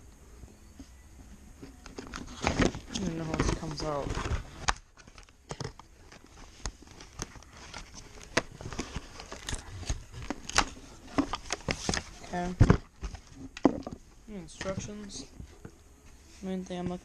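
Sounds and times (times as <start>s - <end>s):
packaging crackling: 1.9s - 13.0s.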